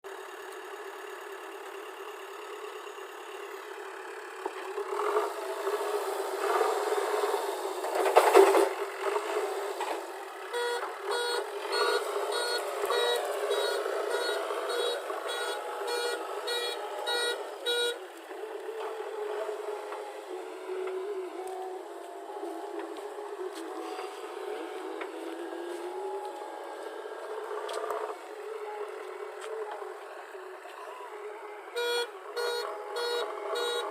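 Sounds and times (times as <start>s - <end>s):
diesel engine running under load: 0.1s - 33.9s
reversing alarm beeps: 10.5s - 18.0s, 31.7s - 33.9s.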